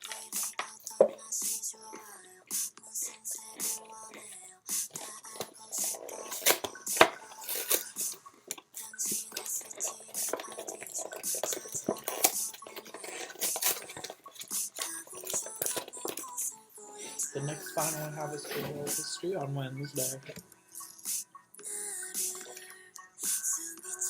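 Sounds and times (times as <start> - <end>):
utensil scraping food container: 5.4 - 8.2, 9.1 - 16.4.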